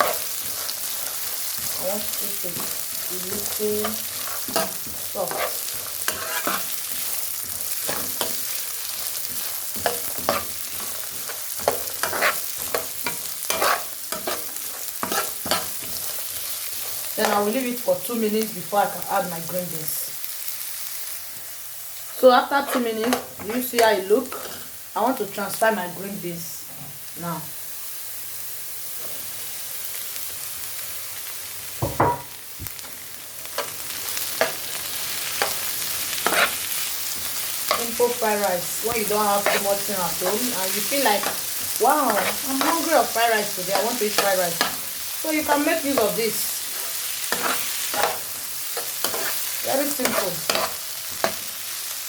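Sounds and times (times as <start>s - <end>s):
utensil scraping and stirring: 0.0s - 17.4s, 22.6s - 24.7s, 36.2s - 38.0s, 39.3s - 44.8s, 46.0s - 51.5s
carrots sizzling in frying pan: 0.0s - 52.0s.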